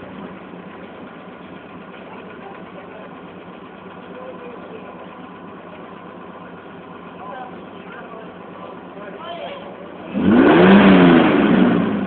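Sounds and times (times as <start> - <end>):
car engine idling: 0.0 - 12.0.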